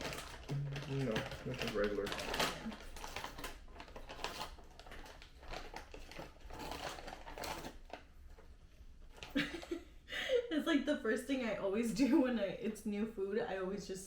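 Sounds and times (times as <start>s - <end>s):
crinkling chip bag: 0.0s - 9.5s.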